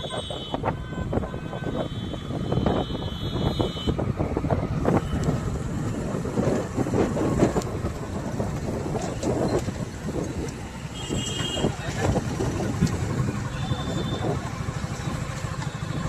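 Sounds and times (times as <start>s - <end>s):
road vehicle rumbling: 0.0s - 16.0s
wind buffeting microphone: 0.0s - 16.0s
rattles and clatter: 5.7s - 13.5s.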